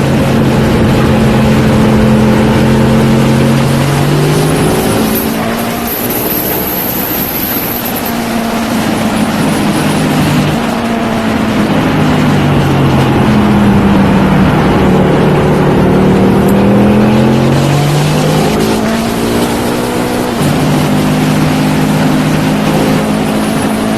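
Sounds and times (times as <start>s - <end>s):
motorcycle engine running: 0.0s - 23.9s.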